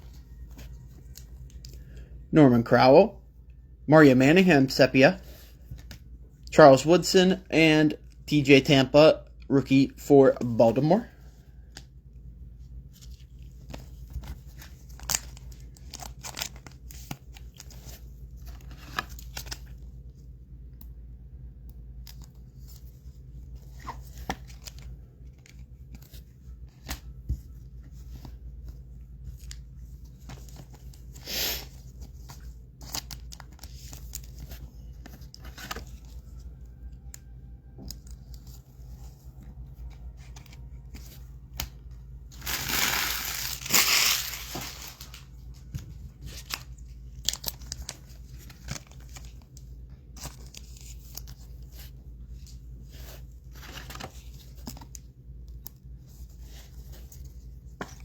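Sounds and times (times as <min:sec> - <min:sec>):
foil wrappers rustling: 0:42.3 - 0:49.6.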